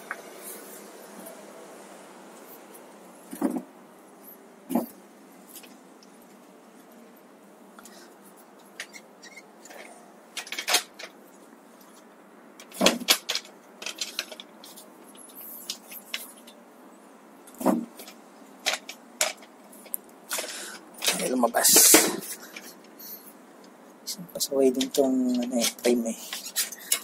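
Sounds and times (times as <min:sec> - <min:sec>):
metallic clicks and knocks: 0:12.6 - 0:14.8.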